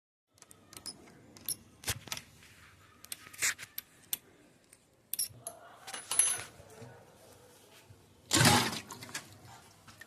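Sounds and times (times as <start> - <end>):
metal tools clicking and clinking: 0.4 - 2.3, 5.1 - 6.5.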